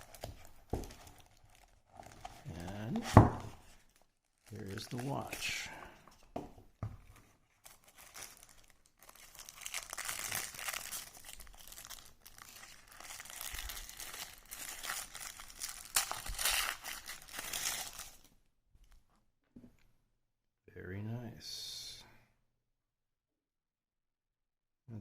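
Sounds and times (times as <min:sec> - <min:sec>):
packaging crinkling and rustling: 0:00.0 - 0:18.3.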